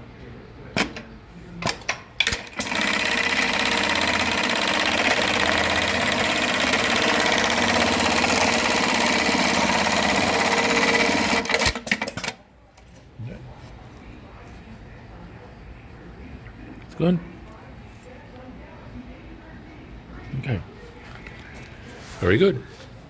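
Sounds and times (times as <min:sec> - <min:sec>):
sewing machine running: 0:01.6 - 0:12.3
sewing machine clicks: 0:01.6 - 0:12.4.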